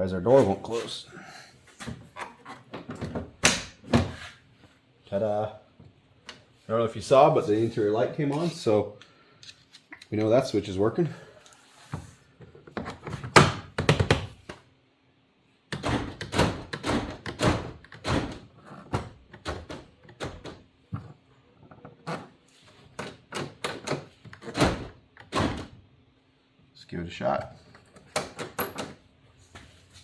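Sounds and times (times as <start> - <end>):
clicks knocks and thunks of parts: 1.8 - 4.1, 12.4 - 14.6, 15.7 - 25.8, 27.6 - 29.0.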